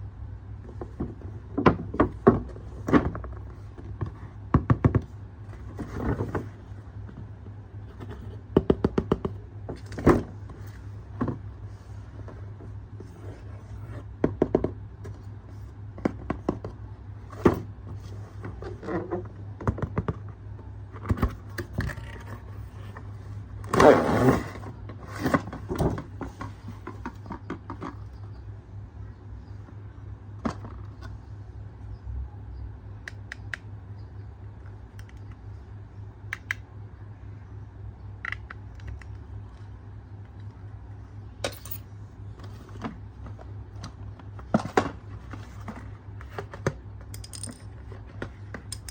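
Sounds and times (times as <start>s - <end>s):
steady low hum: 0.0s - 48.9s
loud scraping rustle: 23.7s - 25.6s.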